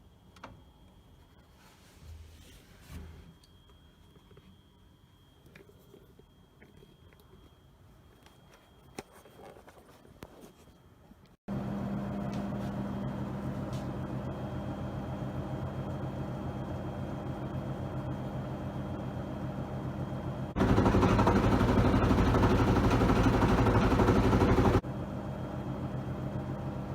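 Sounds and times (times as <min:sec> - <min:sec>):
washing machine spinning: 0:11.5 - 0:26.9.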